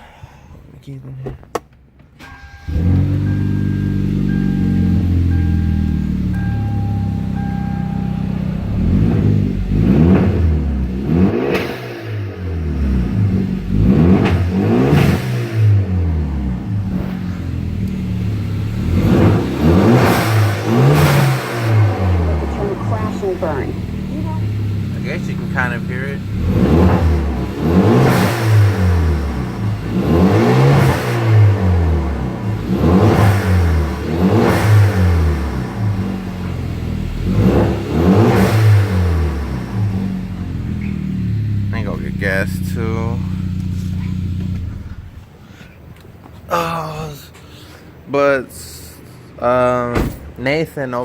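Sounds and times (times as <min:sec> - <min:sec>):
car engine revving: 0:02.2 - 0:45.4.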